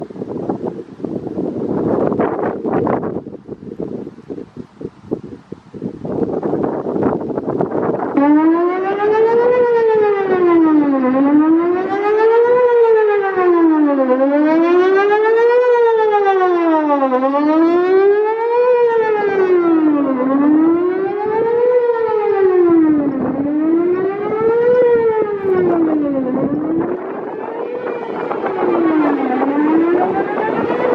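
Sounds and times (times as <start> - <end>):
wind noise on microphone: 0.0 - 30.9
electronic warning siren wailing: 7.8 - 30.9.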